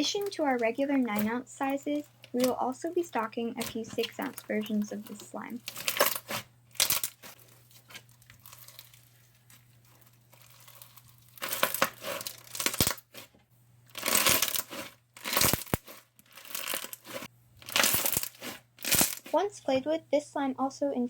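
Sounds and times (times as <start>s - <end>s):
slime crunching by hand: 5.7s - 13.3s.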